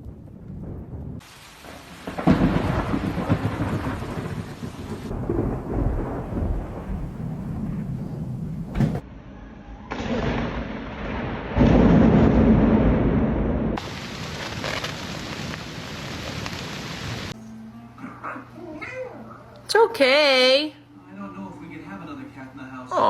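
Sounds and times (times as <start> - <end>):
steady rain: 0.0 - 8.8, 13.8 - 17.4
thunder rumbling: 0.0 - 9.1, 9.7 - 17.4.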